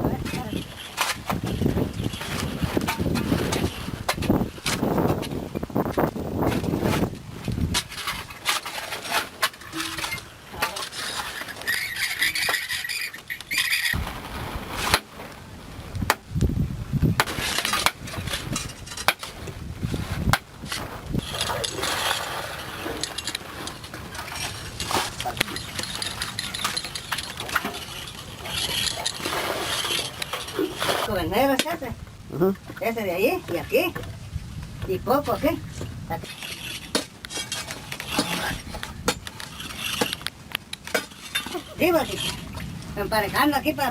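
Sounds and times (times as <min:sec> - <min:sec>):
hand tools striking rock: 0:16.1 - 0:16.3, 0:17.1 - 0:19.4, 0:36.2 - 0:42.4.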